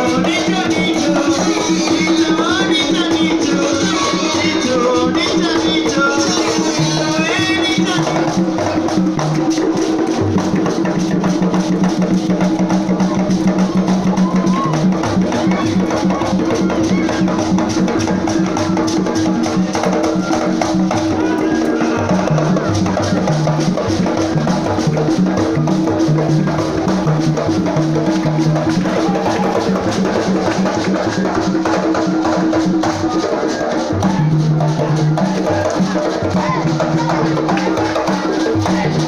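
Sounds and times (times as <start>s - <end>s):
fast dense drumming: 0.0s - 39.0s.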